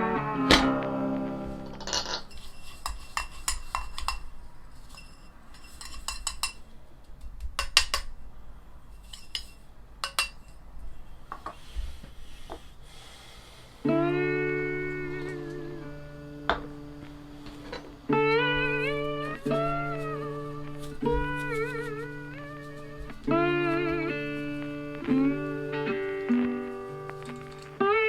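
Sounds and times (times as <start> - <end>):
guitar music: 0.0 - 2.0, 13.8 - 28.0
tableware and utensils clinking: 1.6 - 6.7, 7.6 - 8.2, 9.0 - 10.6, 16.4 - 27.8.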